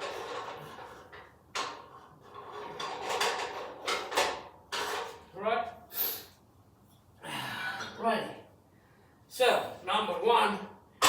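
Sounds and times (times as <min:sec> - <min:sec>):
metal parts scraping and clunking: 0:00.0 - 0:05.2.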